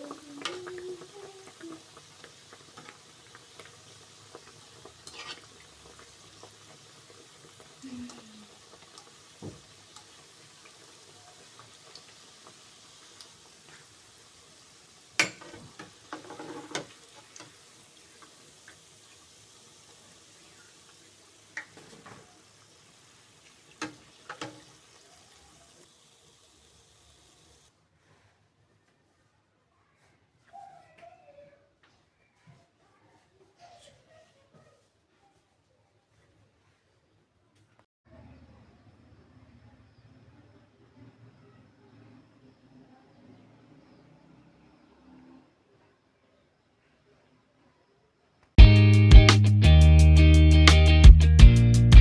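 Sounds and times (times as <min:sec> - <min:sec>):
dough deep-frying in oil: 0:00.0 - 0:27.7
kitchen utensils clinking: 0:15.1 - 0:17.6, 0:23.7 - 0:25.4.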